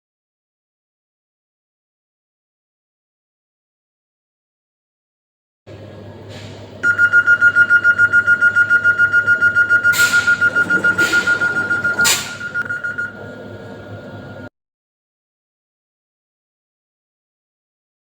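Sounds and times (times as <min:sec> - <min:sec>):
train warning buzzer: 0:06.8 - 0:13.2.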